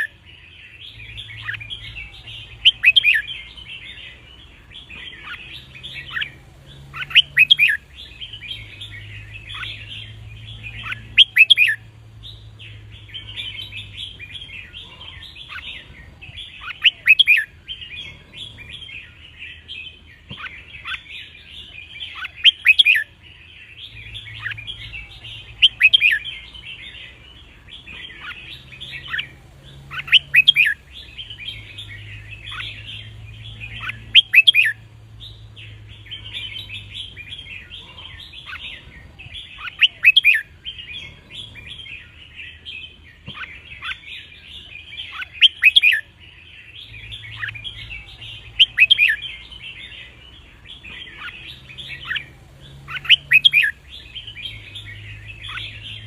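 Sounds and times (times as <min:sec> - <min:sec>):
birds twittering chatter: 0:00.0 - 0:56.0
sharp bird song phrases: 0:00.0 - 0:56.0.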